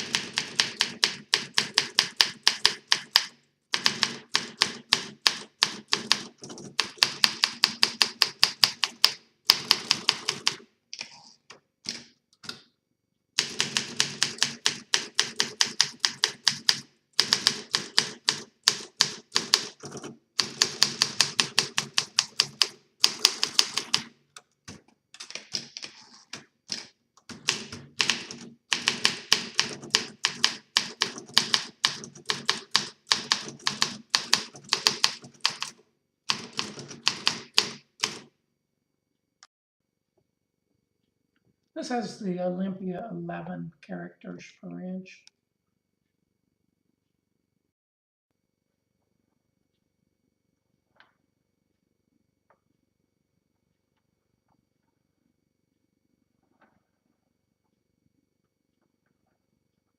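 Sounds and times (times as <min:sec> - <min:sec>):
typewriter keystroke clacks: 0:00.0 - 0:11.2, 0:13.4 - 0:24.1, 0:24.7 - 0:38.3.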